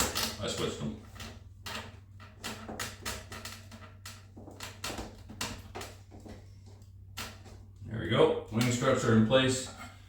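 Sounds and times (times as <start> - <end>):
plastic parts clicking and knocking: 0.0 - 6.4.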